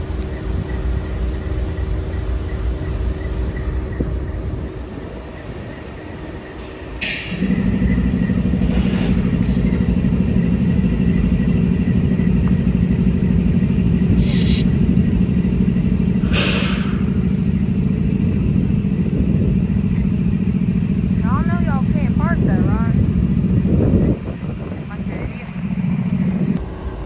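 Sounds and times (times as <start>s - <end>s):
diesel locomotive engine drone: 0.0s - 27.0s
short hissing noises: 14.1s - 14.8s, 16.2s - 17.3s.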